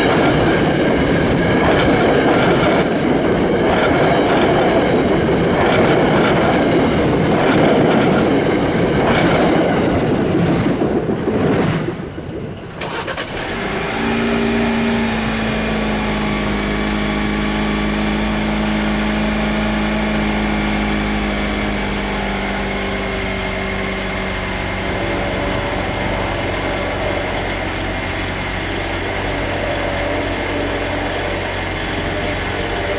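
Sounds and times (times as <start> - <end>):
steady machine hum: 13.5 - 32.9.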